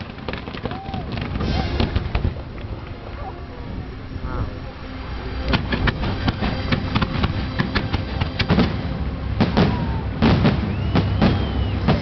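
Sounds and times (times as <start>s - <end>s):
low rumble: 0.7s - 12.0s.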